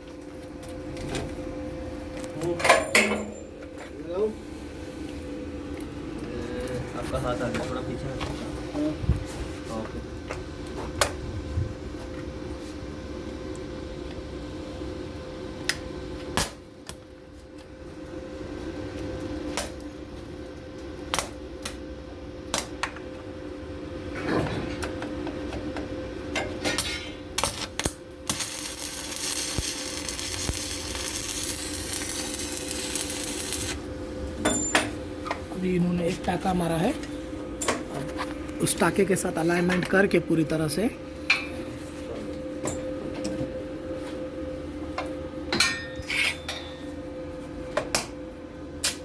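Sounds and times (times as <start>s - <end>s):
steady hum: 0.0s - 49.0s
arc welding crackle: 27.2s - 34.4s.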